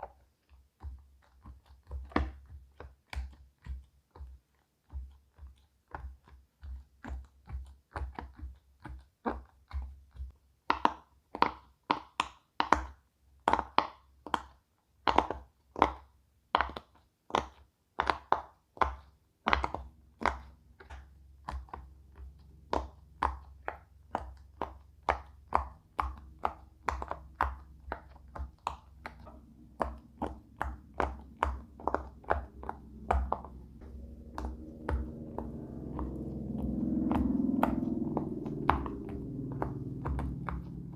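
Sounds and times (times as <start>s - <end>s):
fidget toy bubbles popping: 0.0s - 40.9s
faint low hum: 19.6s - 40.9s.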